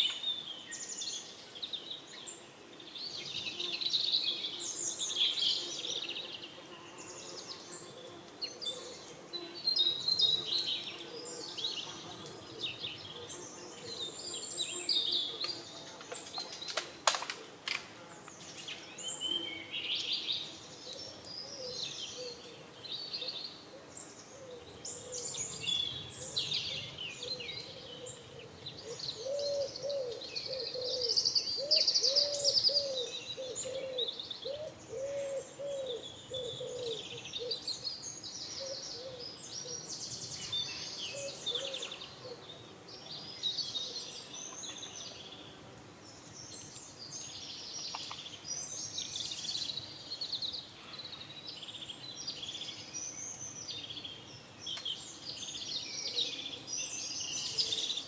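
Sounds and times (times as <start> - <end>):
small birds chirping: 0.0 - 17.0, 18.3 - 58.0
pigeon cooing: 28.8 - 37.6.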